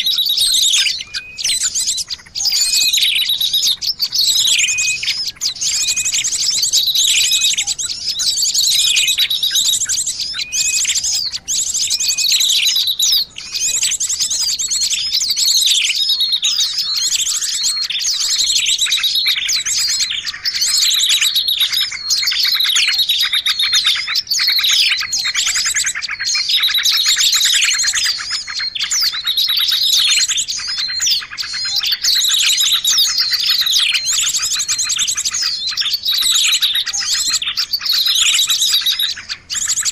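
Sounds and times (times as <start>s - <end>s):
songbirds chirping and trilling: 0.0s - 39.9s.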